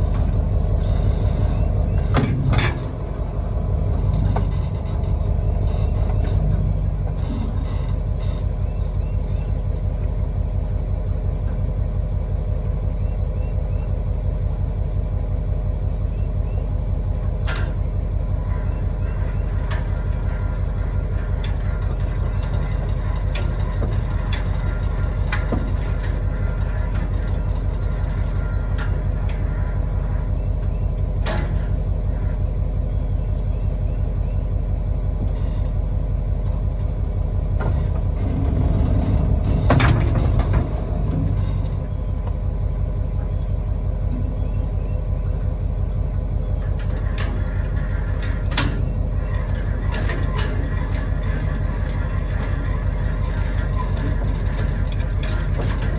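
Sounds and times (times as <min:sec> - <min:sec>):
diesel engine running: 0:00.0 - 0:55.9
sharp clicks and rattles: 0:00.1 - 0:08.6, 0:18.5 - 0:32.4, 0:36.5 - 0:55.9.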